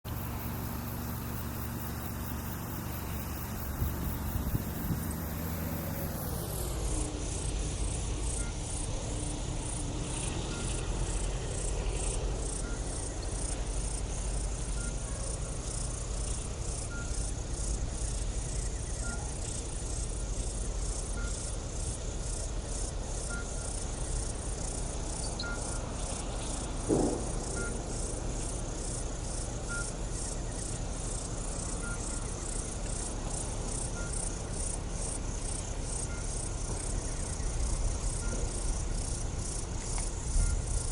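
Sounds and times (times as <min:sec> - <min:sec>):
insects chirping: 0:00.0 - 0:40.9
brief knock: 0:26.9 - 0:27.7.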